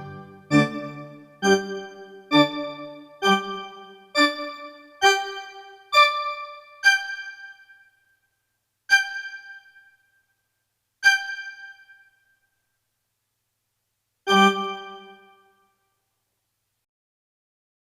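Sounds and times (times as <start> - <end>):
comedic keyboard chords: 0.0 - 7.5, 14.3 - 15.4.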